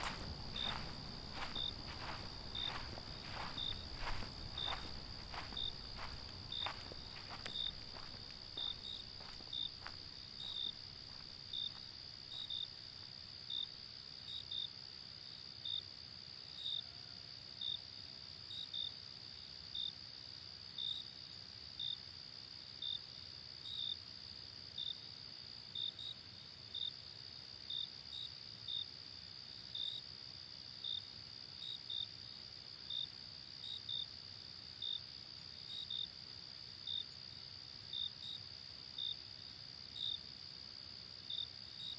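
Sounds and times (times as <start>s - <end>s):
crickets trilling: 0.0s - 13.7s
single cricket chirping: 0.0s - 14.7s, 30.8s - 41.9s.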